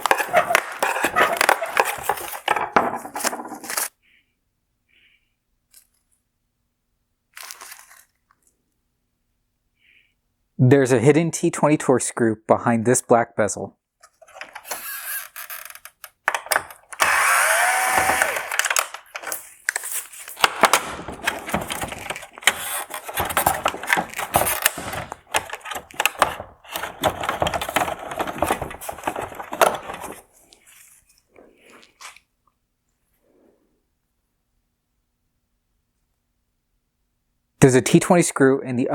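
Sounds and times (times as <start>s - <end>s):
tools clicking on hard plastic: 0.0s - 3.4s, 14.3s - 30.2s
small motor whirring: 14.6s - 15.6s, 17.0s - 18.8s.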